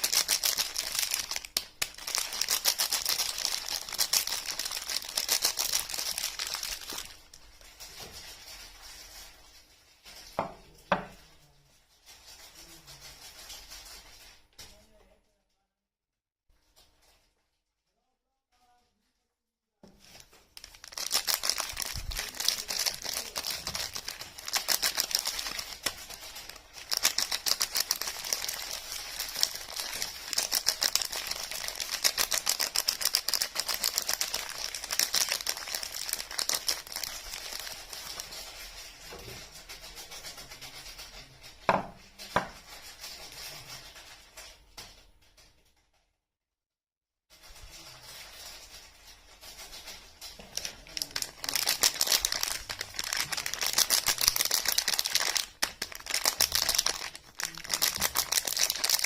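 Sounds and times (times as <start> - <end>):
wrapper crinkling: 0.0 - 10.8, 20.0 - 44.9, 47.3 - 59.0.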